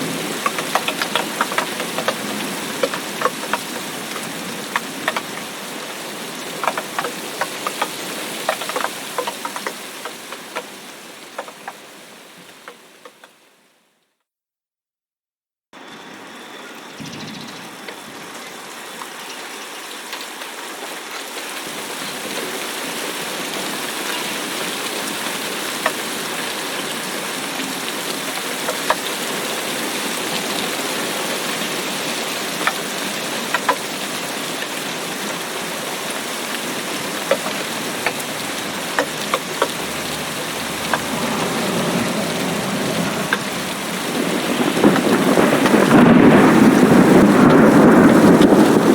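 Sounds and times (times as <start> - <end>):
steady rain falling: 0.0 - 14.0, 15.8 - 48.9
drops ticking on a surface: 0.3 - 5.5, 6.6 - 10.7, 37.2 - 41.5
low rumble of thunder: 40.2 - 48.9.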